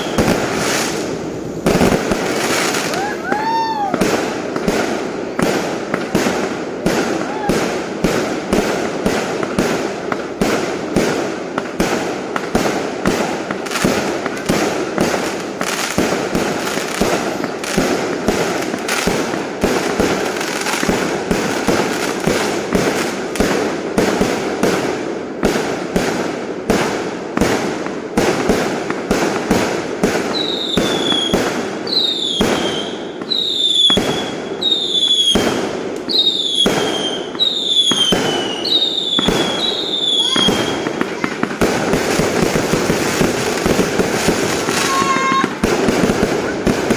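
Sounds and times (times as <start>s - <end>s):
falling firework whistles: 0.0s - 4.3s, 30.3s - 43.7s
fireworks bangs and crackle: 0.0s - 46.9s.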